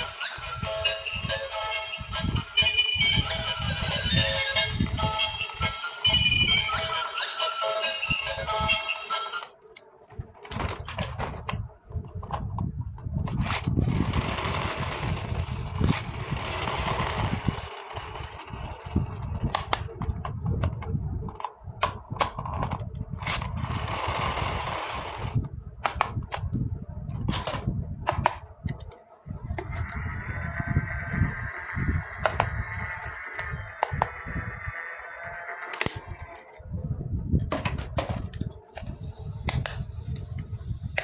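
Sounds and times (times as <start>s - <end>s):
plastic clicks and taps: 32.2s - 32.6s.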